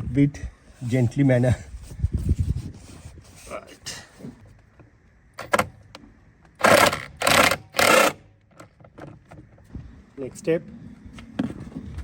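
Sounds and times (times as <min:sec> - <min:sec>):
rapid ratcheting: 0:06.6 - 0:08.2.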